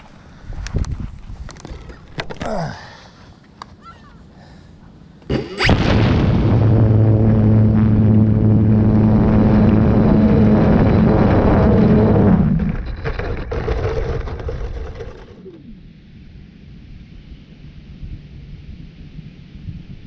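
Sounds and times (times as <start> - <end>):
electric motor and propeller: 6.7 - 20.0.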